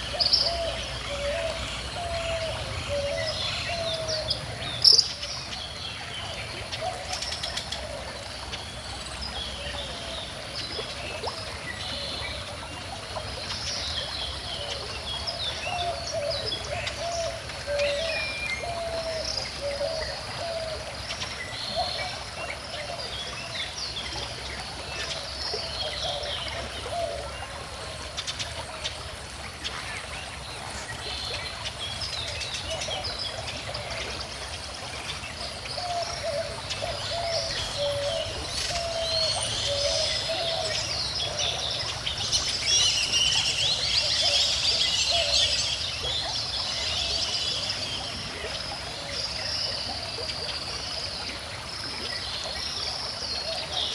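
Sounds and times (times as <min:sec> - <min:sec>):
river flowing: 0:00.0 - 0:53.9
birds chirping and singing: 0:35.8 - 0:47.3.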